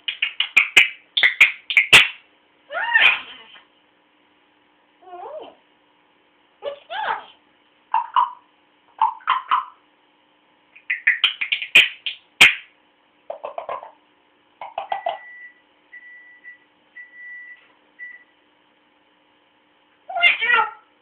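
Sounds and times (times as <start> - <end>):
pet chirping and squeaking: 20.1 - 20.8.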